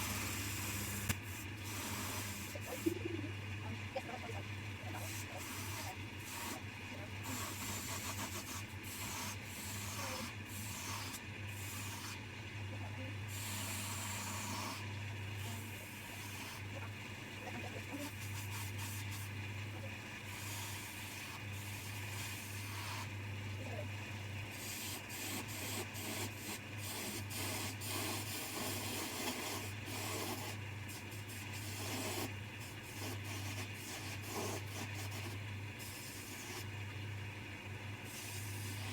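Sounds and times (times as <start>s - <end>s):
turning tool scraping wood: 0.0s - 3.0s, 7.2s - 12.2s, 13.3s - 14.9s, 15.5s - 16.8s, 17.6s - 19.4s, 20.2s - 23.8s, 24.5s - 36.8s, 38.0s - 38.9s
lathe humming: 8.6s - 31.7s.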